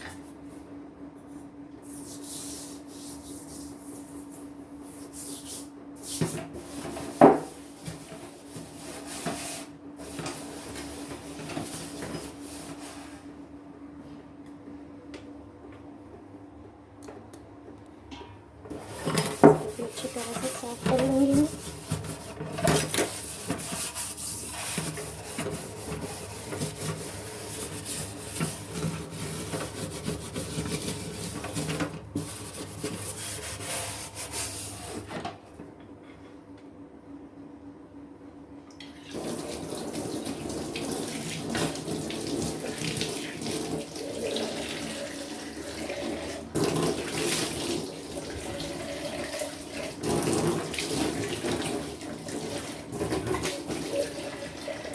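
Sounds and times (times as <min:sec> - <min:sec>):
tap running into sink: 0:18.7 - 0:23.8.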